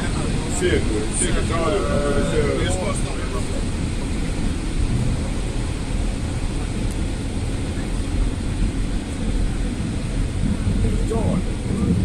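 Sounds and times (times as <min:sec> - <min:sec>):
moving vehicle rumble: 0:00.0 - 0:12.0.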